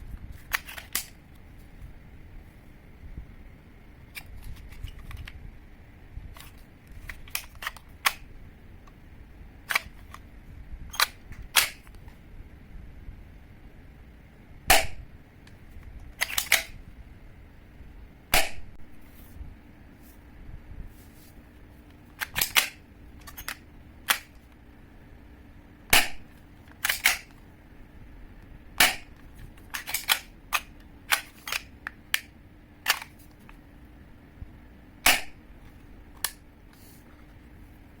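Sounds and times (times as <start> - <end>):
faint steady hum: 0.0 - 38.0
airsoft pistol mechanical clicks: 26.0 - 27.4.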